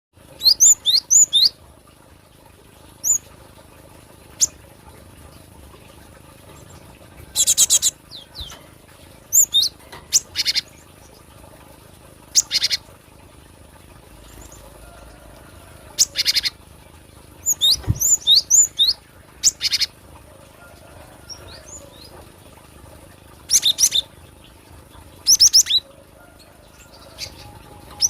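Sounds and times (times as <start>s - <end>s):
bird high swooping chirps: 7.4s - 8.6s, 17.4s - 19.9s.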